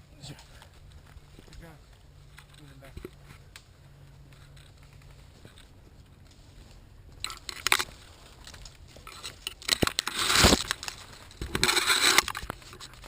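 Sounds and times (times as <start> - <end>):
footsteps crunching through undergrowth: 0.4 - 9.4.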